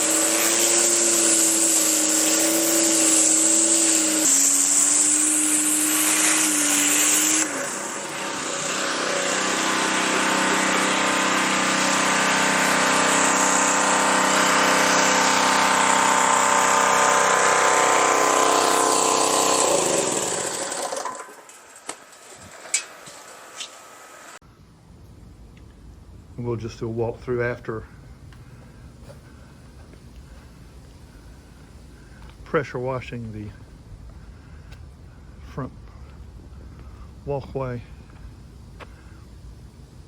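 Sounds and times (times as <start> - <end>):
pressure washer engine running: 0.0 - 21.8.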